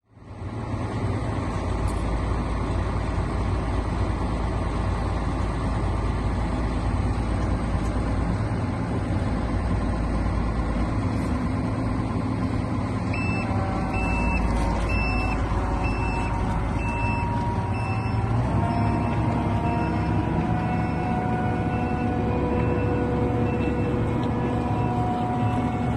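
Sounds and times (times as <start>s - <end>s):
combine harvester engine running: 0.0s - 25.9s
reversing beeper: 13.0s - 25.9s.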